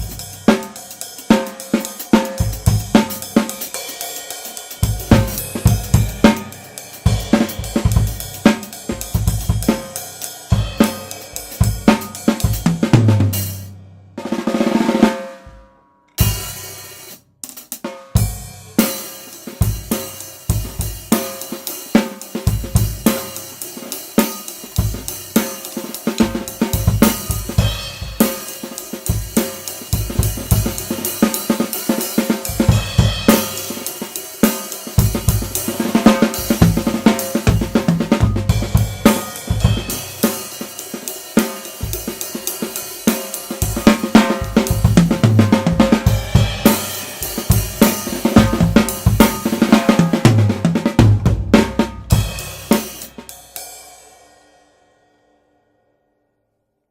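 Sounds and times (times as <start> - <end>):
drum kit groove: 0.0 - 54.4.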